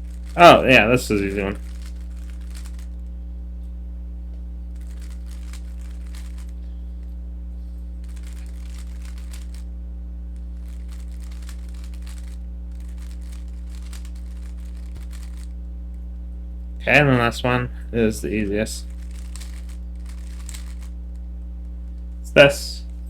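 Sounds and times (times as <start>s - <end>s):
puzzle cube clicking and rattling: 0.0s - 3.0s, 4.8s - 6.6s, 8.0s - 9.6s, 10.6s - 15.5s, 18.8s - 20.9s
low electrical hum: 0.0s - 23.0s.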